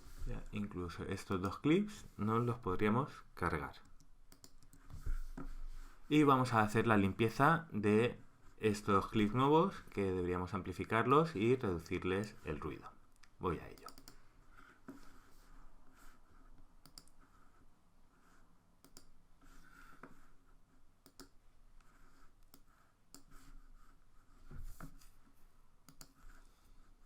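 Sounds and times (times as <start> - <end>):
computer mouse clicking: 3.8 - 4.9, 13.7 - 14.2, 16.8 - 17.2, 18.8 - 19.2, 21.0 - 23.4, 25.9 - 26.3
keyboard typing: 3.9 - 4.9, 13.7 - 14.2, 16.8 - 17.2.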